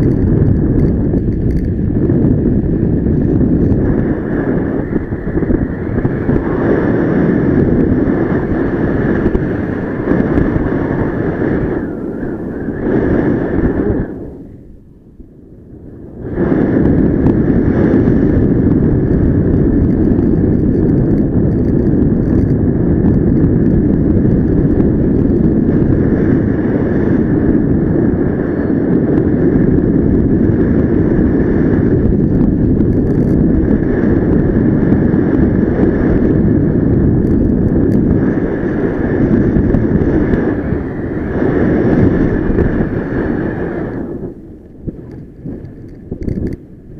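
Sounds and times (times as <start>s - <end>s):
airflow buffeting microphone: 0.0s - 46.9s.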